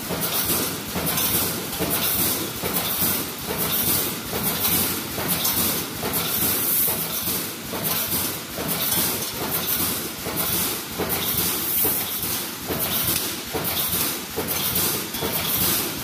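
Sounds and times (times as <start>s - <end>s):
welding machine clattering: 0.0s - 16.0s.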